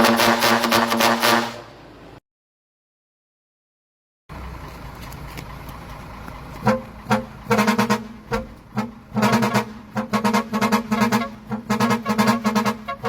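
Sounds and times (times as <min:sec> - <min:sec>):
air horn toots: 0:00.0 - 0:01.8, 0:06.6 - 0:13.0
low steady rumble: 0:04.3 - 0:13.0.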